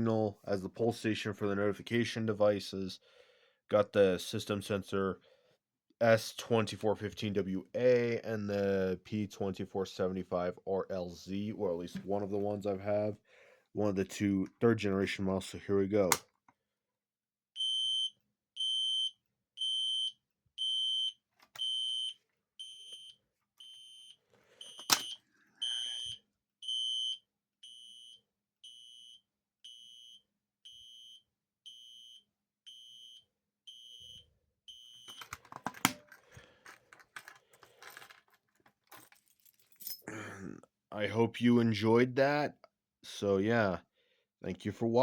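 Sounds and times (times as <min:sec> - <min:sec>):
fire alarm horn beeping: 0:17.6 - 0:35.2
handling clunks and rustling: 0:35.1 - 0:40.1.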